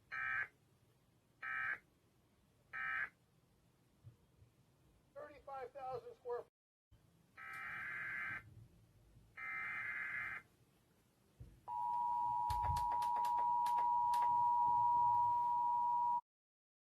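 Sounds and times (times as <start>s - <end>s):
two-tone attention signal: 11.7s - 16.2s
sharp clicks: 12.4s - 14.4s.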